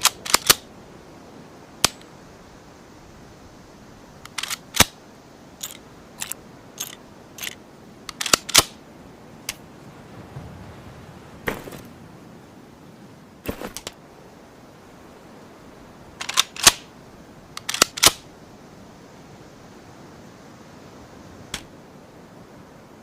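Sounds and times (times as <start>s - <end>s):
rifle bolt clicks and snaps: 0.0s - 0.6s, 4.3s - 4.9s, 5.6s - 8.7s, 16.2s - 16.8s, 17.6s - 18.2s.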